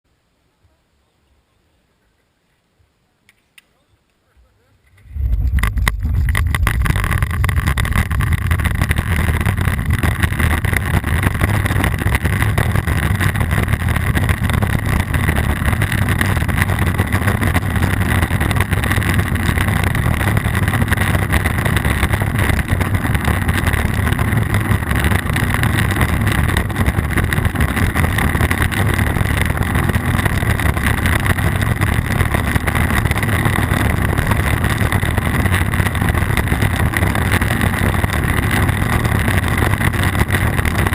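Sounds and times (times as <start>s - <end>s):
deep rumble of trail riding: 4.4s - 40.9s
wind buffeting microphone: 4.9s - 40.9s.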